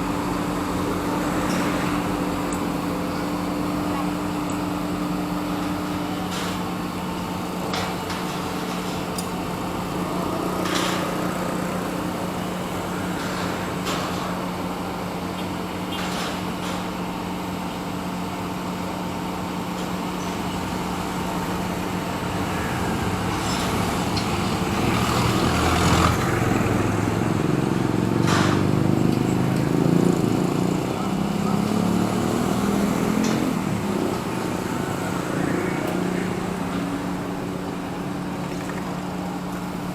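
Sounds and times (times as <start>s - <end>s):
machinery and traffic engine drone: 0.0s - 39.9s
engine revving: 21.9s - 37.2s.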